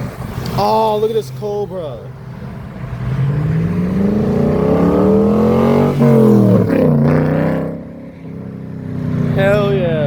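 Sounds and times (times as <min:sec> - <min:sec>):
car engine accelerating past: 0:02.4 - 0:10.0.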